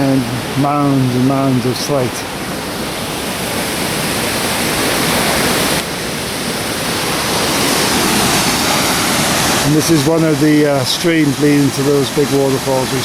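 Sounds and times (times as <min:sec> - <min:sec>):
stream rushing over rocks: 0:00.0 - 0:13.0.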